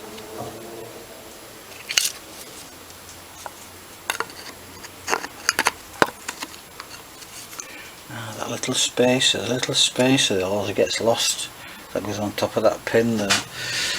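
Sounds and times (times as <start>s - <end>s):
small metal parts clicking: 1.7s - 2.2s, 3.4s - 7.8s.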